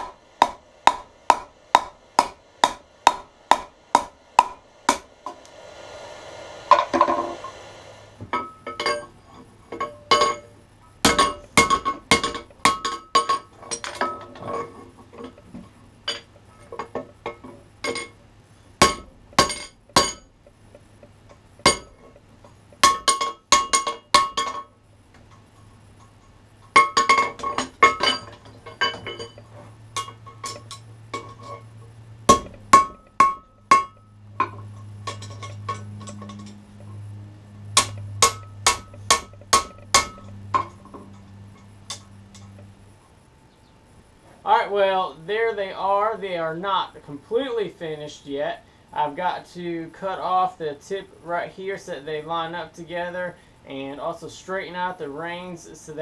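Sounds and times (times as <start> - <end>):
faint low hum: 0.0 - 56.0
hammer ringing on anvil: 9.7 - 14.2, 18.8 - 20.3, 21.6 - 22.0, 32.3 - 36.5, 37.7 - 40.8.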